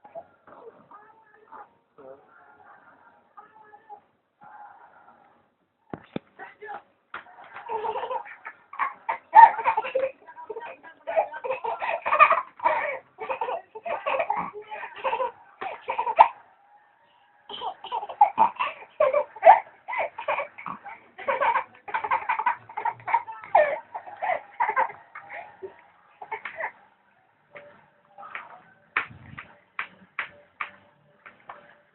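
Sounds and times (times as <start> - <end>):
boy laughing: 7.7 - 16.4, 17.5 - 25.4.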